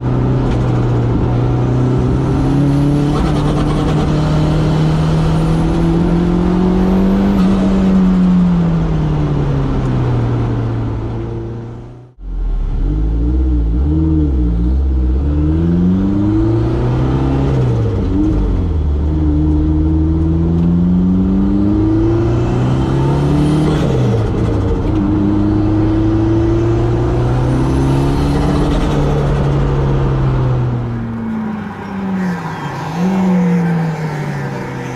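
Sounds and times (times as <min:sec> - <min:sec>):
turbocharged car engine revving: 0:00.0 - 0:09.0, 0:19.3 - 0:34.9.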